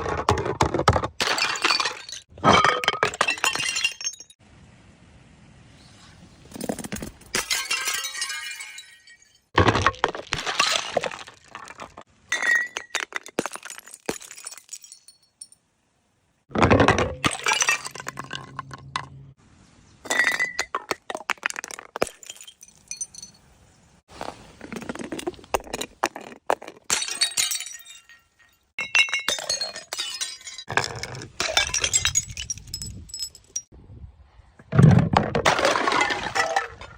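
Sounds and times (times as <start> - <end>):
glass bottles shattering: 1.2 - 4.4, 6.6 - 15.6, 16.6 - 19.3, 20.0 - 23.4, 24.8 - 33.7, 35.4 - 36.9
broken glass clinking: 7.3 - 9.5, 22.0 - 23.4, 26.9 - 30.7.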